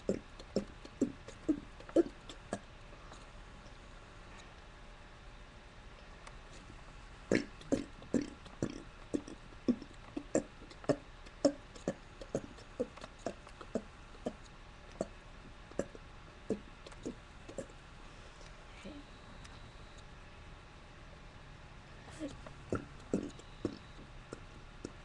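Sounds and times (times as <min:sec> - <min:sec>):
person burping: 0:07.3 - 0:14.4, 0:15.7 - 0:17.7, 0:22.2 - 0:25.0.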